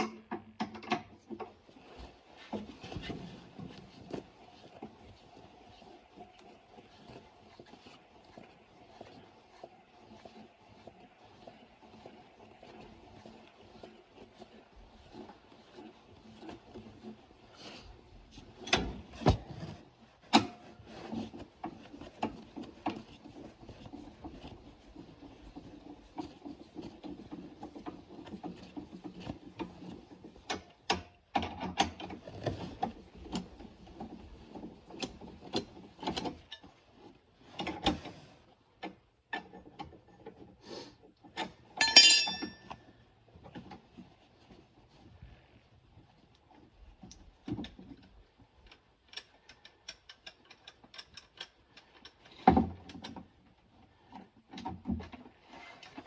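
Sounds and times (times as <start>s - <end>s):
metal tools clicking and rattling: 41.8s - 42.6s.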